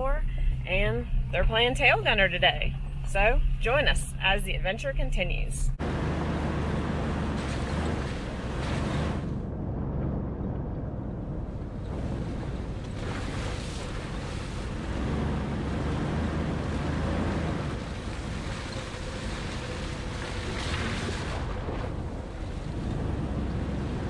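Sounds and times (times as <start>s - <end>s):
vehicle engine rumble: 0.0s - 24.0s
tyres through water and mud: 5.8s - 24.0s.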